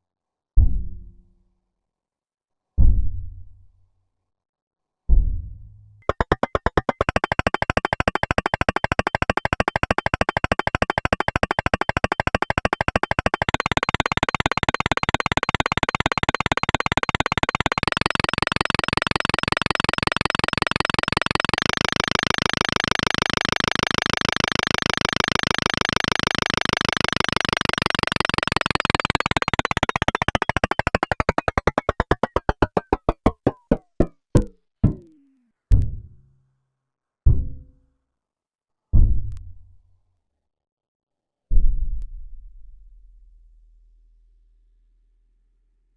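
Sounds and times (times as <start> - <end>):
synthesized percussive hits: 6.0 - 35.2.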